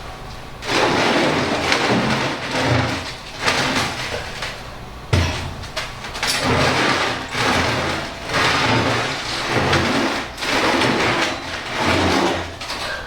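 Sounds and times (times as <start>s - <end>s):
steel frame scraping across floor: 0.6s - 4.3s, 6.2s - 13.0s.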